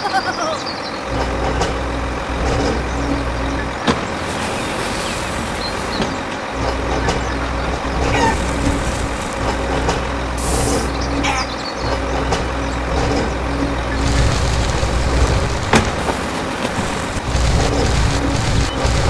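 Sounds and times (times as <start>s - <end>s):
motor humming: 14.0s - 19.0s.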